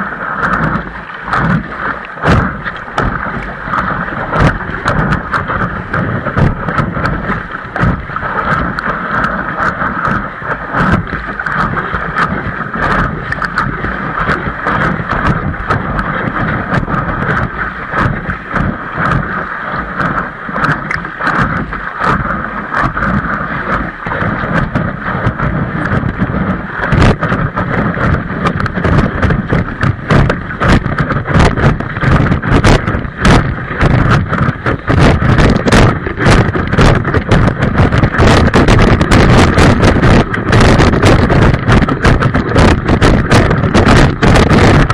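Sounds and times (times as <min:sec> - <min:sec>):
wind buffeting microphone: 0:00.0 - 0:44.9
knocks and rattles: 0:26.9 - 0:44.9.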